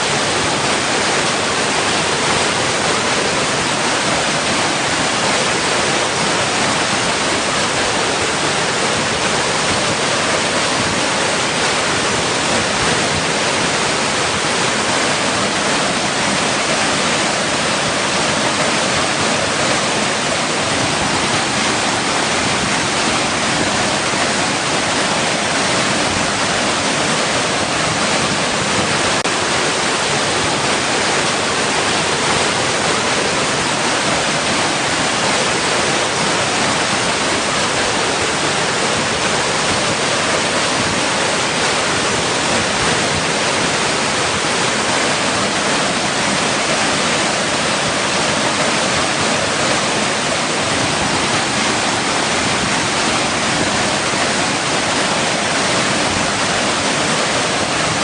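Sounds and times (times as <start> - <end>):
water rushing against rocks: 0.0 - 58.0.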